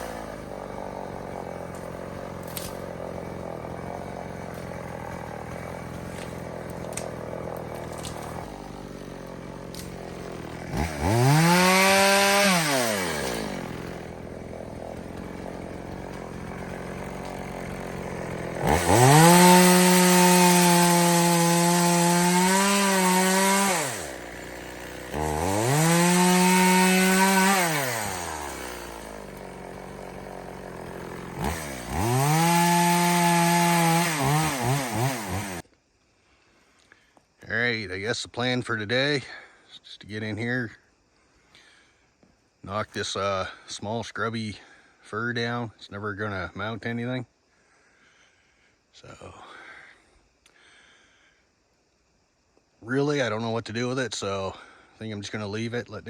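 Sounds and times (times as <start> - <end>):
chainsaw idling and revving: 0.0 - 35.7.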